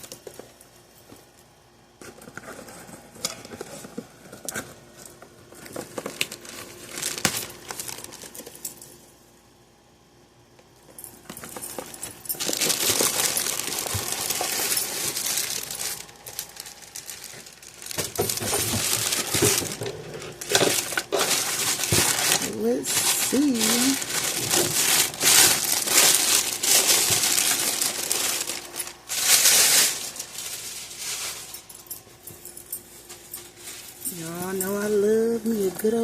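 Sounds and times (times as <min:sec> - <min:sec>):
packaging clicks and rustles: 0:02.0 - 0:08.9, 0:11.2 - 0:32.0
packaging crinkling: 0:05.5 - 0:08.8, 0:11.3 - 0:32.0.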